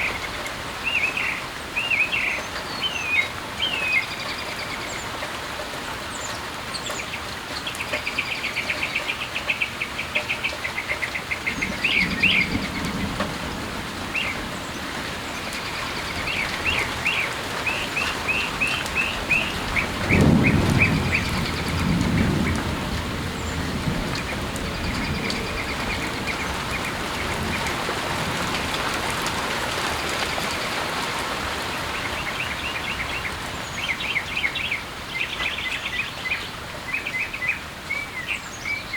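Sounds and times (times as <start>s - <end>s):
steady rain: 0.0s - 38.9s
low rumble of thunder: 11.5s - 31.8s
birds chirping: 14.1s - 28.8s.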